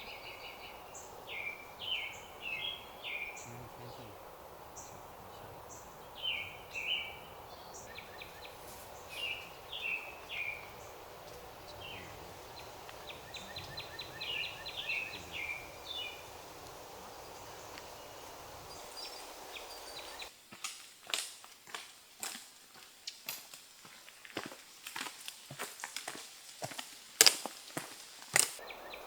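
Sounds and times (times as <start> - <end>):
songbirds singing whistled phrases: 0.0 - 20.3
forest ambience hiss: 0.0 - 29.0.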